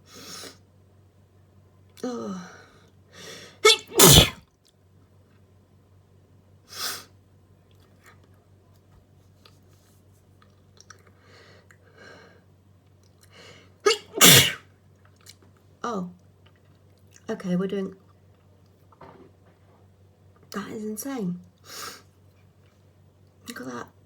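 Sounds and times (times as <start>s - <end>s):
person sneezing: 3.6s - 4.4s, 13.9s - 14.6s.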